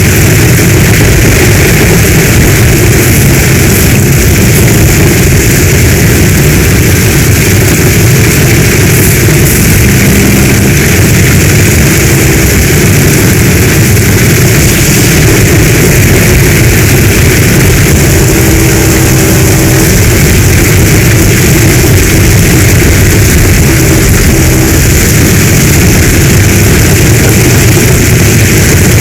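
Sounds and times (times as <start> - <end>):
deep rumble: 0.0 - 29.0
heavy rain downpour: 0.0 - 29.0.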